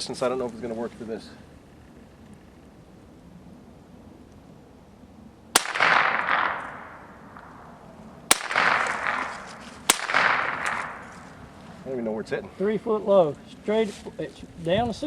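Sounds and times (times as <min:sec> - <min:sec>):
rifle shots with echo: 0:05.5 - 0:11.5.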